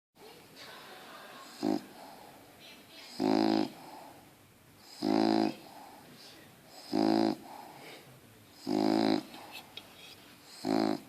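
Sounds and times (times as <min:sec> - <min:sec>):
dog snoring: 0:01.4 - 0:02.3, 0:03.1 - 0:04.2, 0:04.8 - 0:05.9, 0:06.7 - 0:07.8, 0:08.6 - 0:09.6, 0:10.4 - 0:11.0
faint dog breath: 0:01.5 - 0:11.0.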